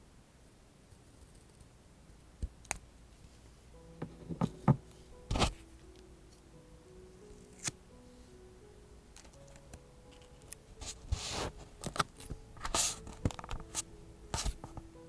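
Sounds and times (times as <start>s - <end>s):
faint soft background music: 0.0s - 15.0s
paper rustling: 10.2s - 14.8s.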